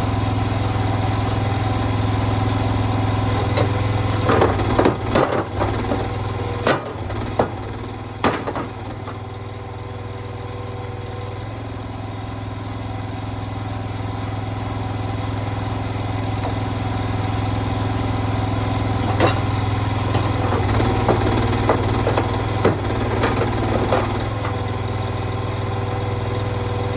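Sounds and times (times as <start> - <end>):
engine running: 0.0 - 26.9
sharp knocks and clatters: 3.3 - 9.4, 16.4 - 16.9, 19.0 - 26.6.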